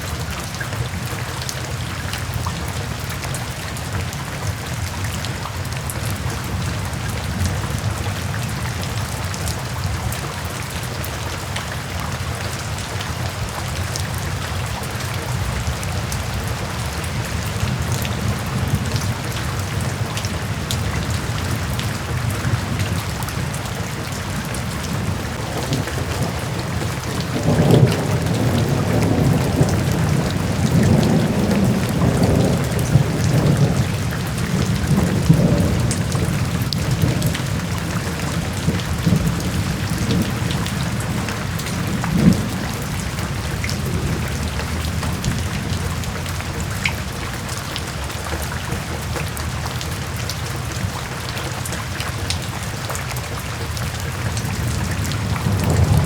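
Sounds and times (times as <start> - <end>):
rain falling: 0.0 - 56.0
low rumble of thunder: 12.3 - 49.6, 54.1 - 56.0.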